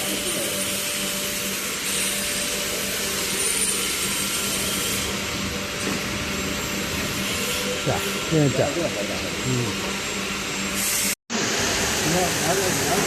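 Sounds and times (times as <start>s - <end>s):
baking machine humming: 0.0s - 13.0s.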